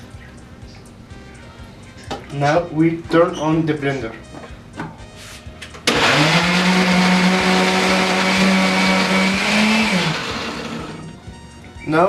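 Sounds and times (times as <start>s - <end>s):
blender motor running: 5.9s - 11.2s.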